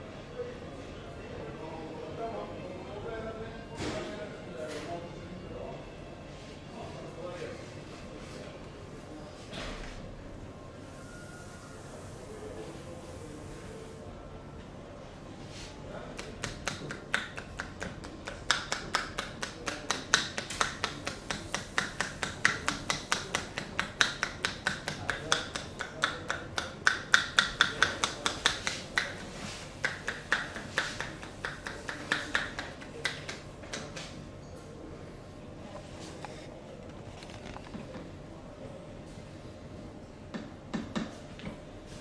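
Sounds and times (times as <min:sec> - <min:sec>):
hands slapping in percussion massage: 0:16.1 - 0:34.2.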